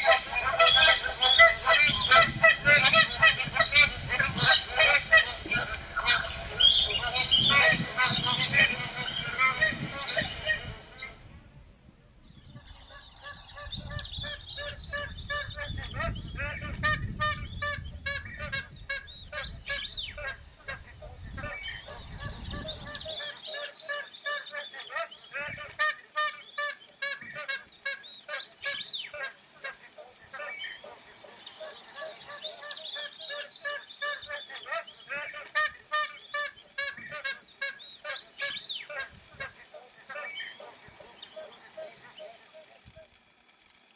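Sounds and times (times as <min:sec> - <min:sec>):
geese honking: 0:00.0 - 0:11.3, 0:13.2 - 0:43.5.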